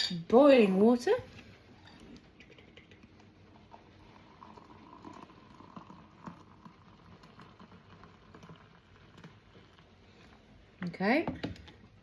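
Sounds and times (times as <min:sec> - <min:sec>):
water pouring into a mug: 0:01.8 - 0:10.5.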